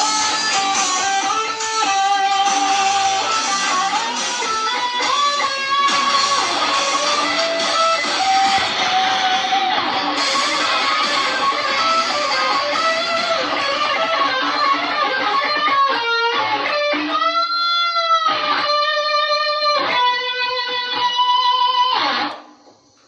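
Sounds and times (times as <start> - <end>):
electric guitar strumming: 0.0 - 22.4.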